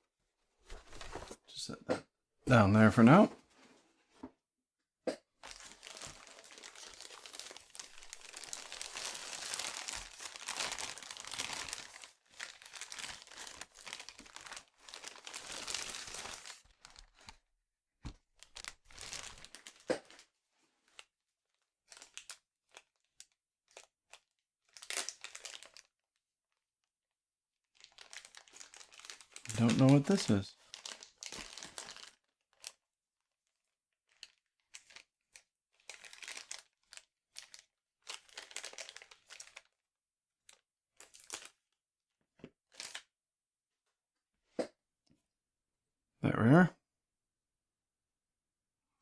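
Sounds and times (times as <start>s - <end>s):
packaging crinkling and tearing: 5.4s - 17.4s, 18.4s - 20.3s, 21.8s - 25.9s, 27.8s - 32.8s, 34.1s - 35.1s, 35.8s - 39.8s, 41.0s - 41.6s, 42.7s - 43.0s.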